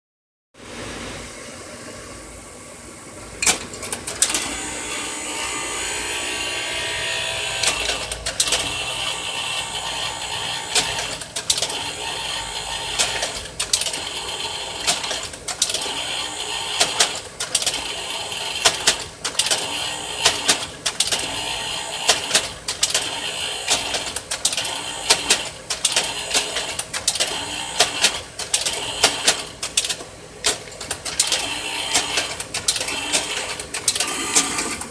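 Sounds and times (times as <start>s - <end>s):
slide projector fan whir: 0.6s - 34.9s
sharp mechanical clicks: 3.4s - 4.6s, 7.4s - 34.9s
low electrical buzz: 4.3s - 13.0s.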